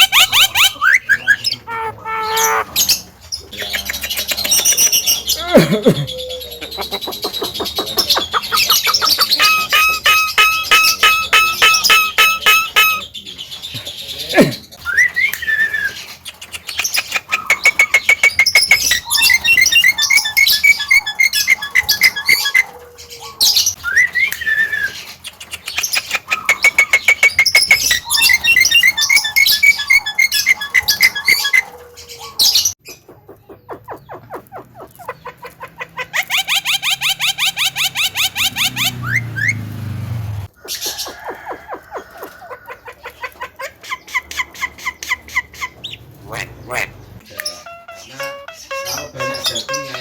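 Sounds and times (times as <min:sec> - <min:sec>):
fast pulsing bird call: 0:00.0 - 0:02.8, 0:06.8 - 0:13.1, 0:36.3 - 0:39.6
bird chattering and trilling: 0:00.0 - 0:39.6, 0:40.5 - 0:50.0.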